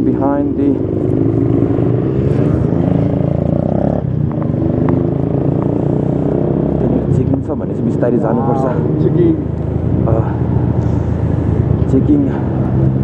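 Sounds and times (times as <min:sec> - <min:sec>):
motorcycle engine running: 0:00.0 - 0:13.0.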